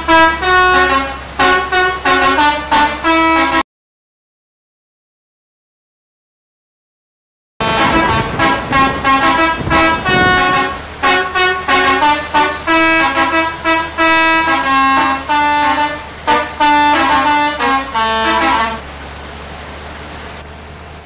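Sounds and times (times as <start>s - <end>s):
bus multi-tone musical horn: 0.0s - 3.6s, 7.6s - 19.4s.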